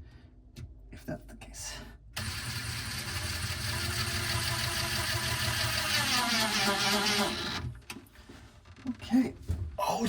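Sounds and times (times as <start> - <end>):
small electric motor running: 2.2 - 7.7.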